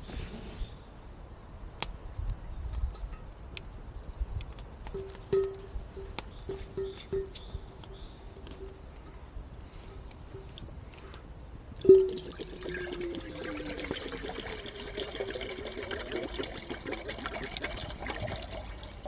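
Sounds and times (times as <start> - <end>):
pot ringing: 5.0 - 8.0, 11.8 - 16.4
water pouring into a pot: 11.8 - 19.0.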